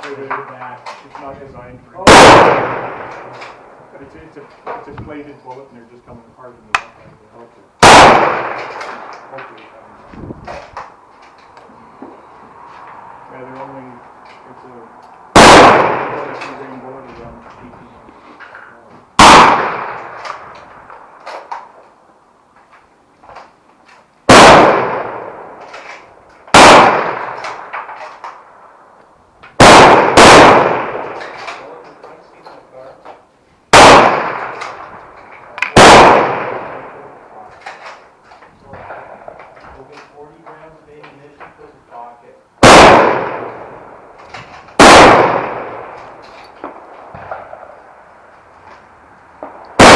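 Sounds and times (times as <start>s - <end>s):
rifle shots with echo: 2.0s - 3.8s, 7.8s - 9.4s, 15.3s - 16.9s, 19.2s - 21.4s, 24.3s - 28.4s, 29.6s - 31.8s, 33.7s - 38.0s, 42.6s - 47.8s, 49.4s - 49.9s.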